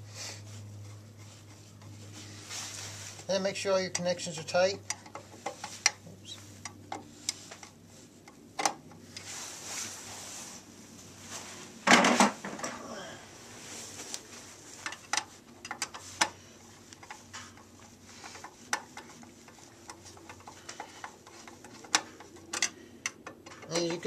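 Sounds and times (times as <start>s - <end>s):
tools and metal parts clinking: 19.9s - 24.0s.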